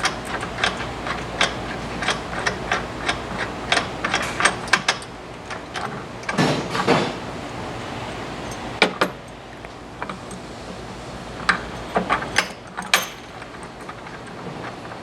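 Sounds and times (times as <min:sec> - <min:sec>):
metal tools clinking on steel: 0:11.5 - 0:13.4.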